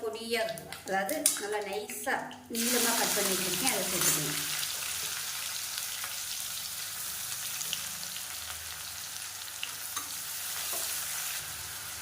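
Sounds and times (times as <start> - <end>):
onions sizzling in oil: 2.6 - 12.0.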